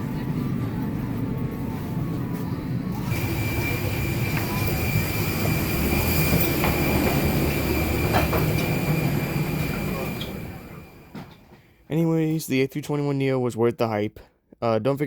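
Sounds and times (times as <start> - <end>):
steady high whine: 0.0 - 11.7.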